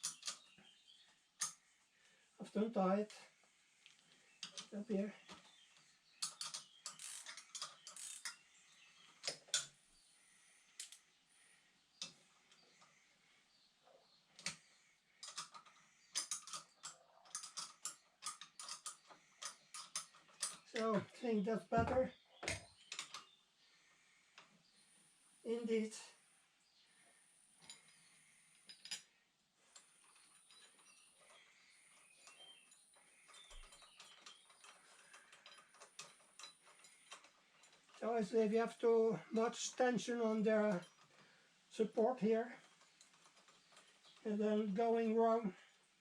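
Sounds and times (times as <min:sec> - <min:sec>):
small metal parts and tools clicking: 0:00.0 - 0:00.6, 0:01.4 - 0:01.7, 0:03.8 - 0:09.9, 0:10.7 - 0:11.1, 0:12.0 - 0:13.0, 0:13.9 - 0:21.2, 0:21.8 - 0:23.4, 0:27.6 - 0:38.0, 0:38.7 - 0:44.8
ratchet clicking: 0:06.2 - 0:08.4.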